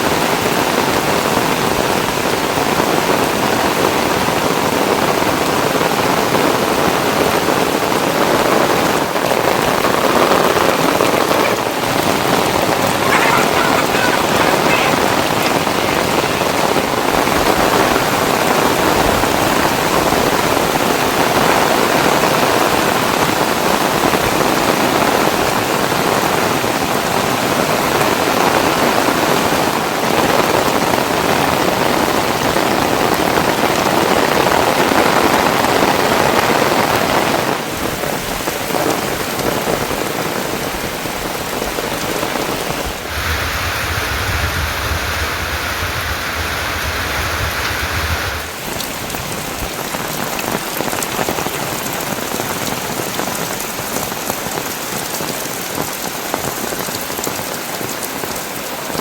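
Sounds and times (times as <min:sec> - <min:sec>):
heavy rain falling: 0:00.0 - 0:59.0
low rumble: 0:43.0 - 0:49.3.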